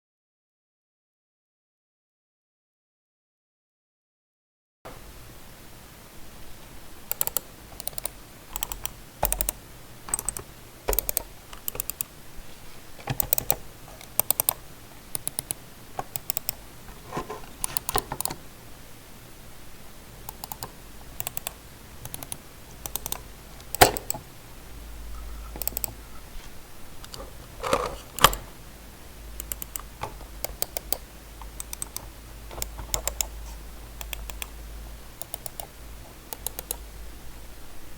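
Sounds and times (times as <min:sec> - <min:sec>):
computer mouse buttons clicking: 0:07.1 - 0:12.1, 0:13.0 - 0:18.4, 0:20.3 - 0:24.3, 0:25.2 - 0:26.2, 0:27.0 - 0:28.5, 0:29.4 - 0:34.6, 0:35.2 - 0:36.8.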